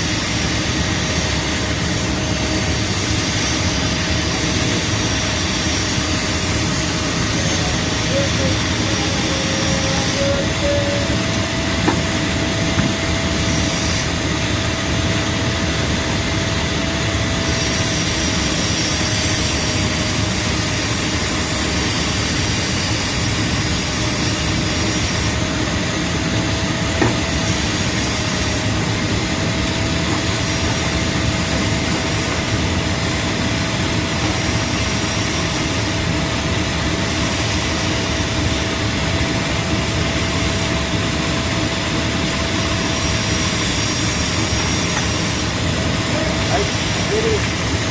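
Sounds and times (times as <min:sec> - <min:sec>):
diesel engine running: 0:00.0 - 0:47.9
thin steady whine: 0:00.0 - 0:47.9.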